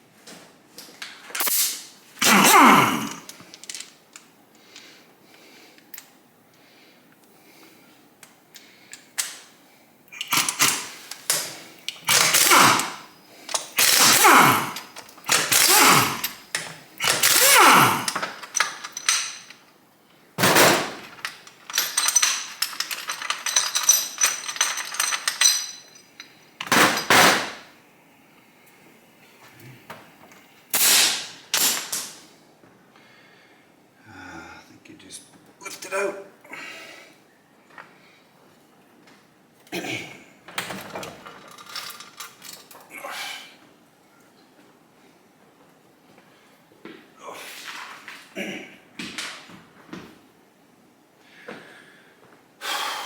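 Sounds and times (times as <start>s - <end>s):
power tool rattling: 10.2s - 19.5s, 20.4s - 25.5s.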